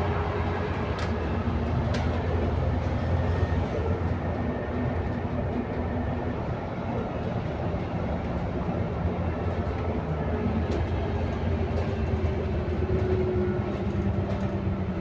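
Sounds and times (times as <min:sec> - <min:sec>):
bus engine drone: 0:00.0 - 0:15.0
road noise: 0:00.0 - 0:15.0.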